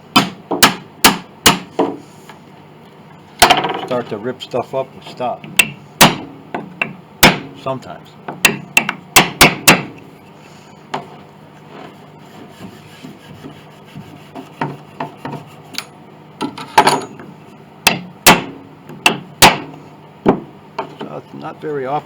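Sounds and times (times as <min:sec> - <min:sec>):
hammer tapping on wood: 0:05.4 - 0:07.5, 0:08.3 - 0:09.9
wood scraping: 0:10.4 - 0:15.9.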